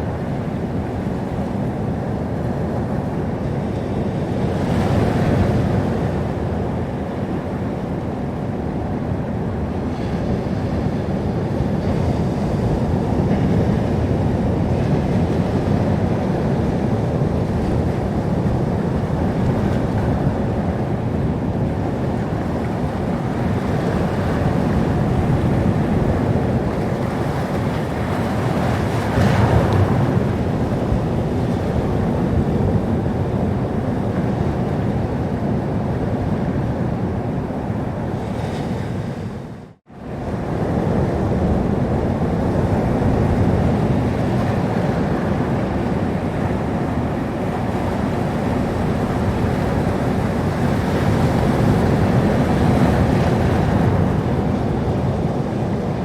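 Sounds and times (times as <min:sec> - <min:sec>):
waves washing in: 0:00.0 - 0:56.0
wave breaking: 0:22.2 - 0:34.0.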